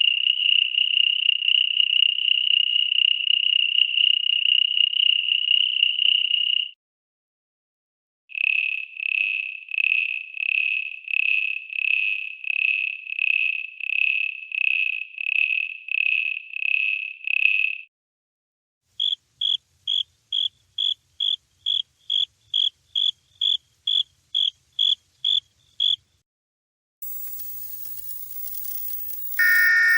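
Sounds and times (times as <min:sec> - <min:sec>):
insect chirping: 0:19.0 - 0:26.0, 0:27.0 - 0:29.9.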